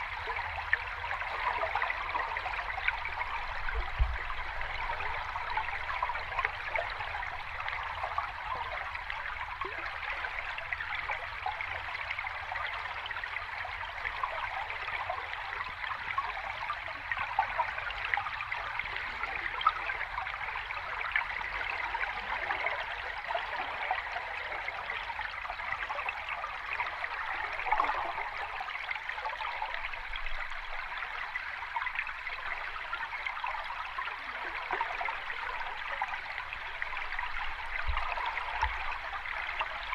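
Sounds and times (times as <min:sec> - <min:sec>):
water running over rocks: 0:25.5 - 0:39.9.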